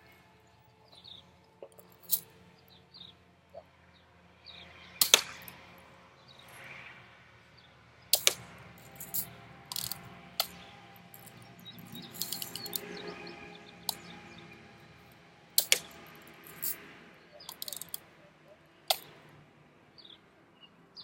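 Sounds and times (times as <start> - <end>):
bb guns cocking and firing: 5.0 - 5.5, 8.2 - 8.5, 9.7 - 10.6, 15.6 - 16.0.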